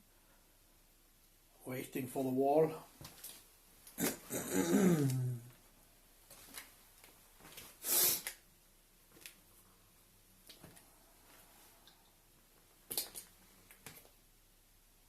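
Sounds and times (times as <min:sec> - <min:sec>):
man's wordless vocal sound: 0:04.0 - 0:05.6
short sharp hiss: 0:07.8 - 0:08.4.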